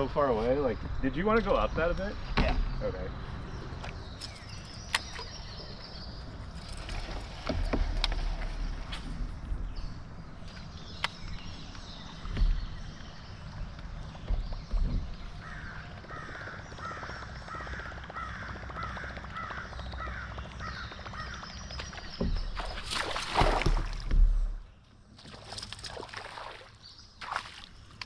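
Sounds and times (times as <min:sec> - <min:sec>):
bird calling: 0:10.5 - 0:23.2.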